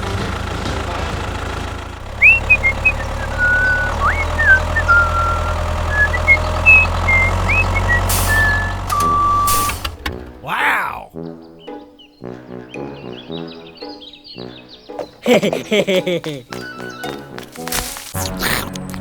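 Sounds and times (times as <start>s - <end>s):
vehicle engine running: 0.0s - 10.4s.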